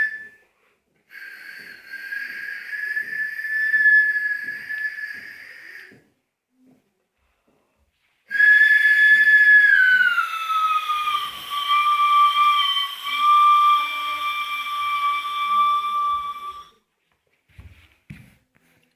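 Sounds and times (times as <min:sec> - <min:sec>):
high whistling tones: 0:00.0 - 0:00.5, 0:01.1 - 0:06.1, 0:08.3 - 0:16.9.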